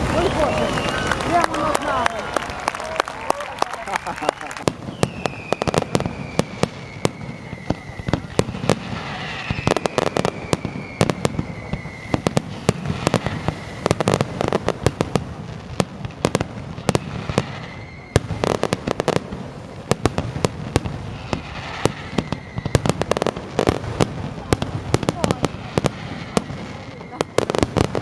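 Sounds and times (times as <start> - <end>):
firework high whistle: 0.0 - 3.1, 4.0 - 15.1, 15.8 - 19.2, 19.9 - 28.0
fireworks bangs: 0.0 - 28.0
fireworks crackling: 0.0 - 28.0.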